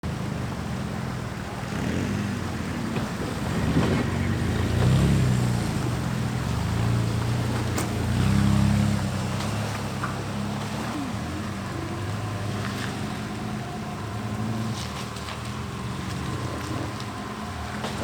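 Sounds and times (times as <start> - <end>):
car engine revving: 0.0 - 18.0.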